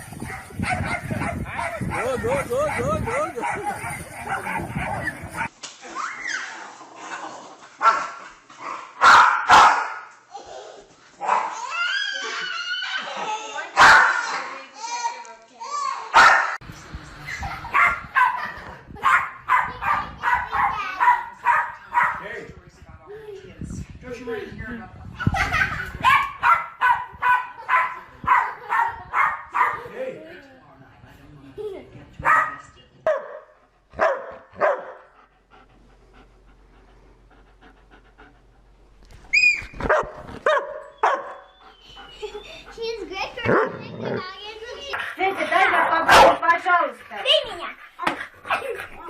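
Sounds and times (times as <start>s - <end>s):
dog barking: 0.2s - 5.5s, 7.8s - 10.1s, 11.2s - 11.6s, 13.8s - 14.3s, 16.1s - 16.6s, 17.6s - 22.2s, 26.0s - 29.9s, 32.2s - 35.1s, 39.8s - 41.5s, 46.0s - 46.4s
dog crying high-pitched: 1.9s - 6.6s, 11.5s - 13.3s, 39.3s - 39.8s.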